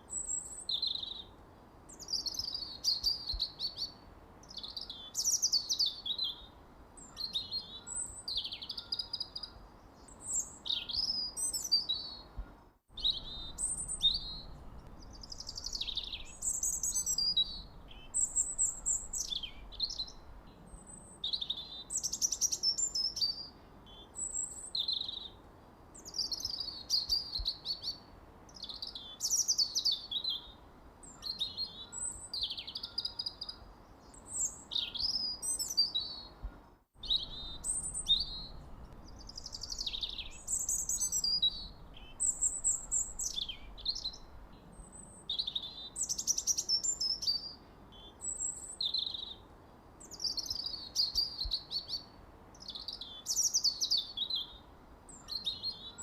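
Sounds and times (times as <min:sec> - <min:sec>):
songbirds chirping and singing: 0:13.0 - 0:25.4, 0:26.0 - 0:49.4.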